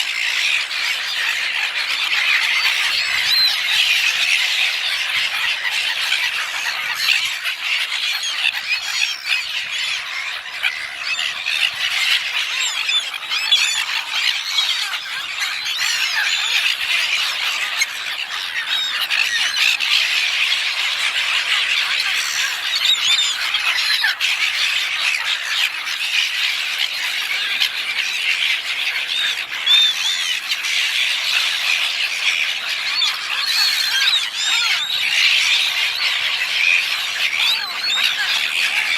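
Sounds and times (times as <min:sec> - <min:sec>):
gulls squawking: 0:00.0 - 0:38.9.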